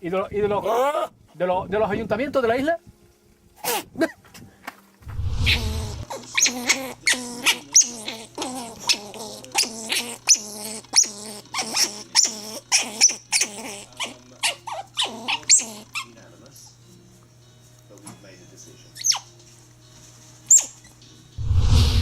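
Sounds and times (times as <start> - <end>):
steady low hum: 5.0 - 6.1
animal yelping cries: 5.8 - 16.2, 20.5 - 21.0.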